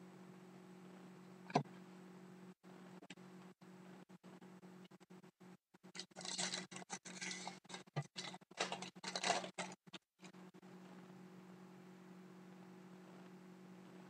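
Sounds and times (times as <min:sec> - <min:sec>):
faint steady hum: 0:00.0 - 0:14.0
trading cards rustling: 0:06.0 - 0:09.8.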